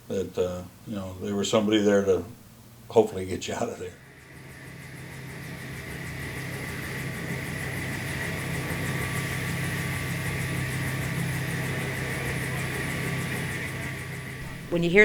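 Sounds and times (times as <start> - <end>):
helicopter turbine and rotor: 2.9 - 15.0.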